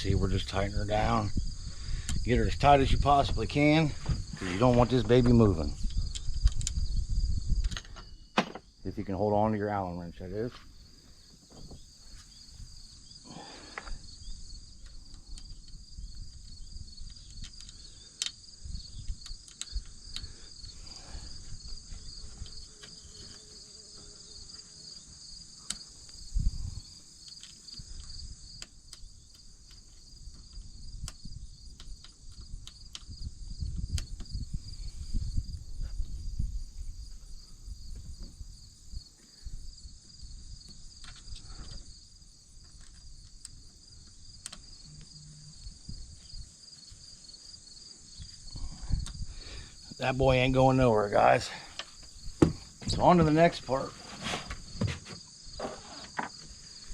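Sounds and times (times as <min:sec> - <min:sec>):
insects chirping: 0:00.0 - 0:56.9
small metallic clicks: 0:05.8 - 0:06.8, 0:14.8 - 0:20.4, 0:27.2 - 0:33.2
heavy thump: 0:52.4 - 0:53.4.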